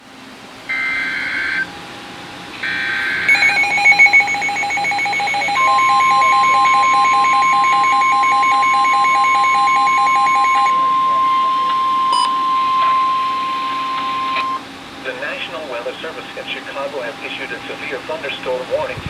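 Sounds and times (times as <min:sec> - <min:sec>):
steady warning alarm tone: 0:00.7 - 0:01.7, 0:02.5 - 0:15.9
digital header data bursts: 0:02.6 - 0:14.6
rapid pulsing alert beep: 0:03.1 - 0:14.6.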